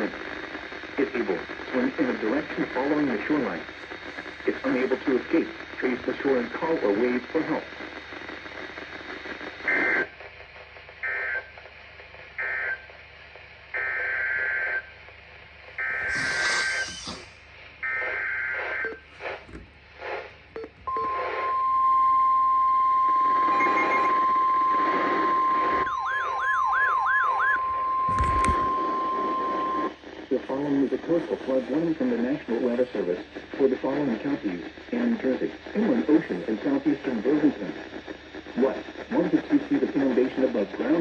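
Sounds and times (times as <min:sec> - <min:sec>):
screeching digital data bursts: 0:15.8 - 0:17.4.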